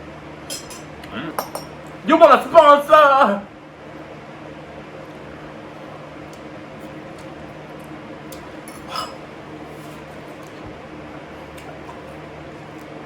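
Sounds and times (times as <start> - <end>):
fan humming: 0.0 - 13.0
cutlery clink: 0.5 - 1.8.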